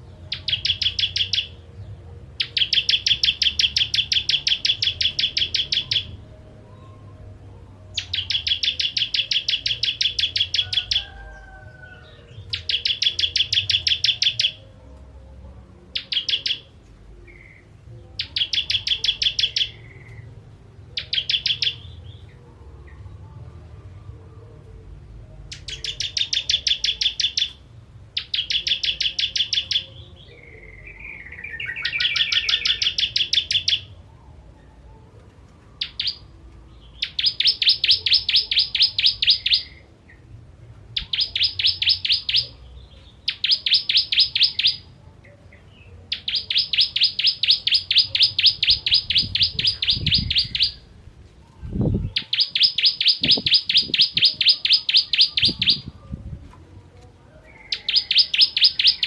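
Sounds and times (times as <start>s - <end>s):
bird singing rattling trills: 0.0s - 1.6s, 2.4s - 6.2s, 8.0s - 11.2s, 12.5s - 14.6s, 16.0s - 16.7s, 18.2s - 20.2s, 30.7s - 34.0s, 35.8s - 39.8s, 41.0s - 44.9s, 46.1s - 50.8s, 51.8s - 55.9s, 57.6s - 59.0s.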